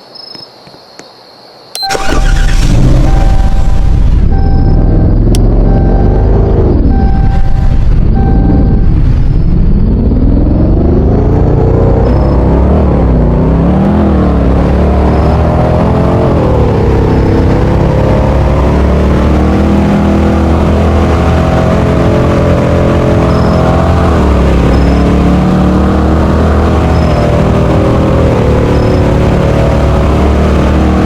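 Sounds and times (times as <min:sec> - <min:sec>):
low rumble: 0:02.1 - 0:19.0.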